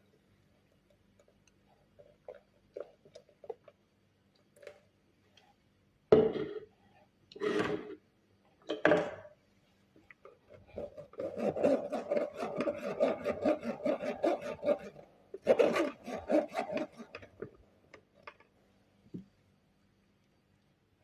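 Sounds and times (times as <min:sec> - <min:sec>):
utensil rasping on food: 0:10.9 - 0:17.3.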